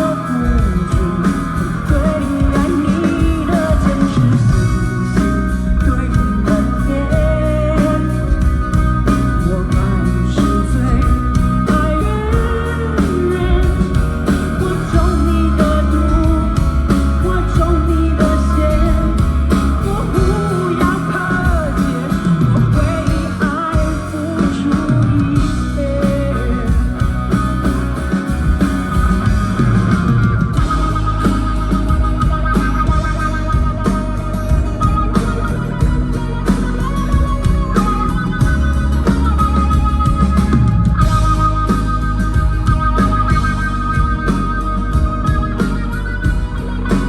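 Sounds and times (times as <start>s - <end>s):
live rock band playing: 0.0s - 47.0s.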